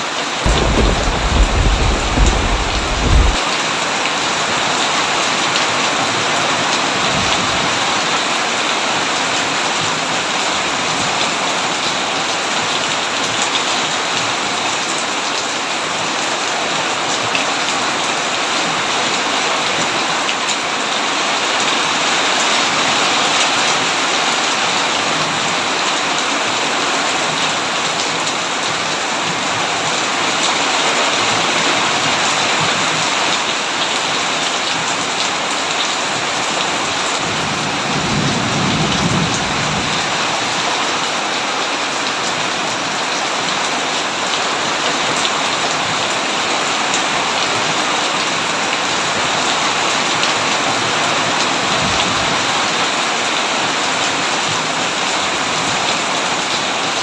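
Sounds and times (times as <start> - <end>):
heavy rain falling: 0.0 - 57.0
low thunder rumble: 0.5 - 3.4.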